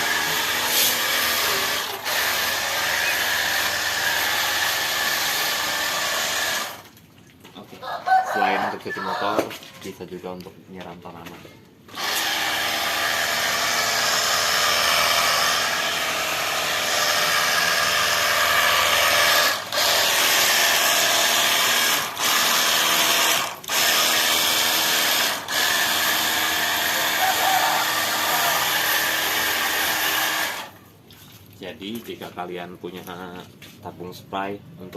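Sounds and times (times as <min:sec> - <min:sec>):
electric pump motor whining: 0:00.0 - 0:06.9, 0:11.9 - 0:30.8
water spray hissing: 0:00.7 - 0:01.0.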